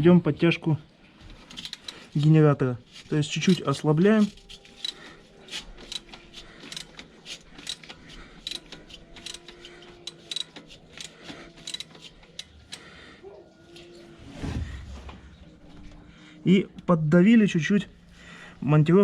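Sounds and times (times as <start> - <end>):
ratchet wrench clicking: 1.5 - 2.2, 4.6 - 12.8
low metal scrape: 13.7 - 16.3.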